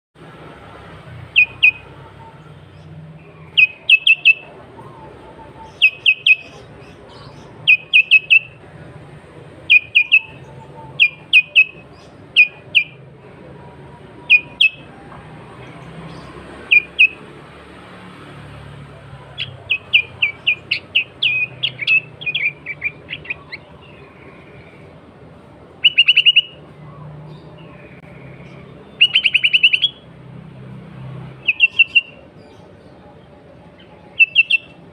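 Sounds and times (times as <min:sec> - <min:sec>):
bird calling sharp notes: 0:01.2 - 0:08.7, 0:09.6 - 0:13.1, 0:14.0 - 0:17.3, 0:19.2 - 0:24.9, 0:25.7 - 0:30.2, 0:31.4 - 0:32.4, 0:33.8 - 0:34.9.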